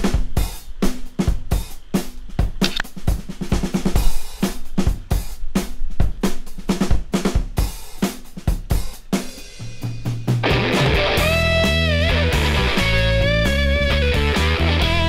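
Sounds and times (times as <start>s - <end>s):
rock drum beat: 0.0s - 15.0s
bass note: 10.4s - 15.0s.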